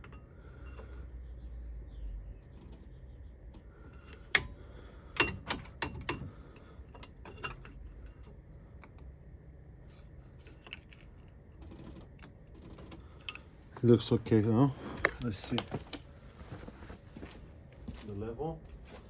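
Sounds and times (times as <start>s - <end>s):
metal clicks and knocks: 3.5s - 6.3s.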